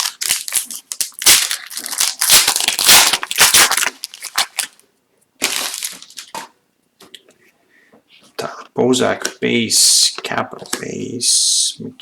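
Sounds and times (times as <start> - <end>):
wrapper crinkling and rustling: 0.0 - 4.8, 5.4 - 6.5.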